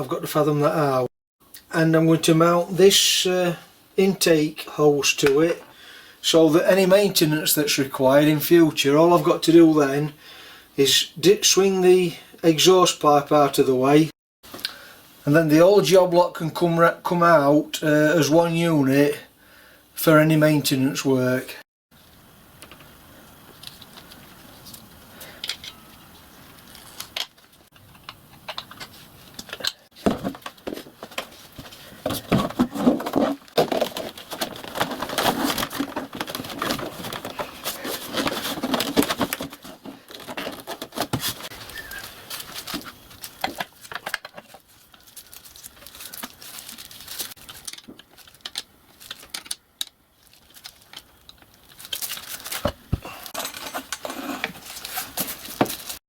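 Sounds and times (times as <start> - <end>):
rustling handling noise: 22.0 - 56.0.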